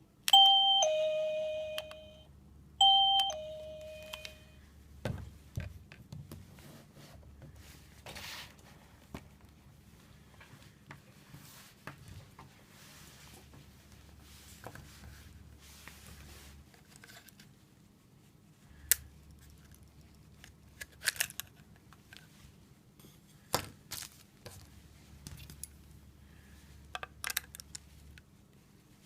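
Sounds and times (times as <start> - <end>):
faint low hum: 0.3 - 5.0.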